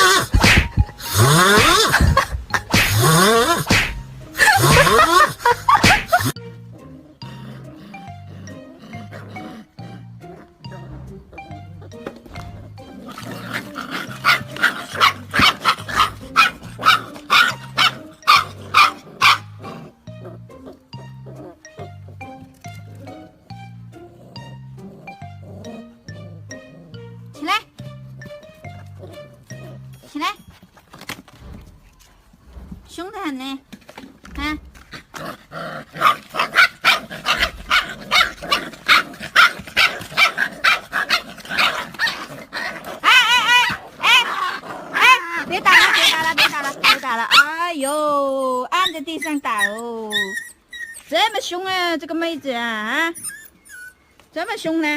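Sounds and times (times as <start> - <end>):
dogs barking and snarling: 0.0 - 27.2, 33.8 - 51.6
background music: 0.0 - 54.9
dog barking rapidly: 13.5 - 19.5, 36.0 - 47.6.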